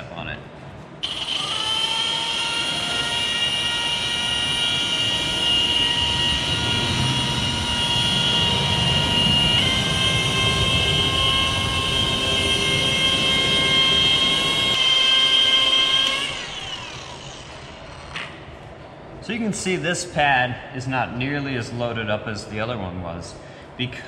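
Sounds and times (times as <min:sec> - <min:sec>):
rotary polisher motor whine: 0:01.0 - 0:18.2.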